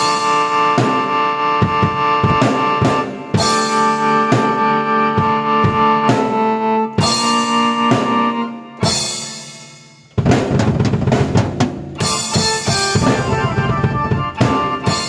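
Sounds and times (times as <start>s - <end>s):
drum kit playing: 0.0s - 15.0s
keyboard notes: 0.0s - 15.0s
rapid drum fill: 8.8s - 15.0s.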